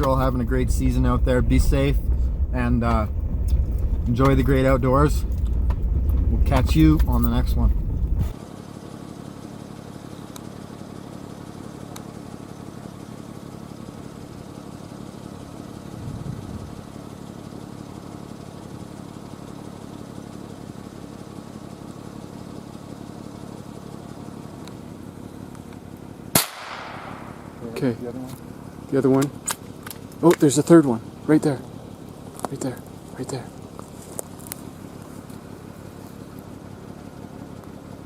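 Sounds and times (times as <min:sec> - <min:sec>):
vehicle engine running: 0:00.0 - 0:38.0.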